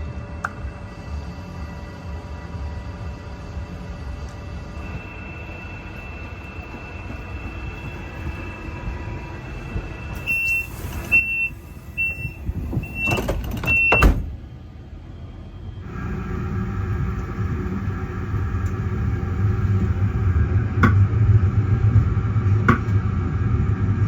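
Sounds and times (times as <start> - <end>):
train rumbling: 0.0 - 24.0
steady electronic tone: 4.6 - 12.4
short beeps: 10.2 - 14.1
door hissing: 10.2 - 14.4
door shutting thump: 12.7 - 14.4.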